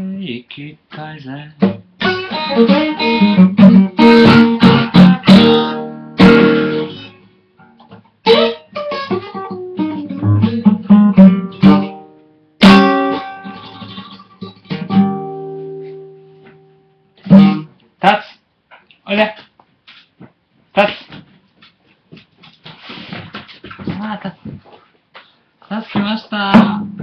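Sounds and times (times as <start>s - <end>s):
blues guitar playing: 1.0s - 17.8s.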